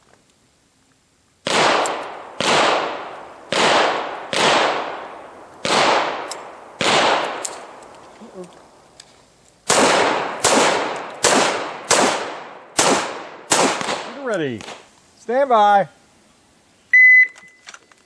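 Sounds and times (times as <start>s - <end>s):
pistol shots: 1.4s - 7.8s, 9.7s - 14.8s.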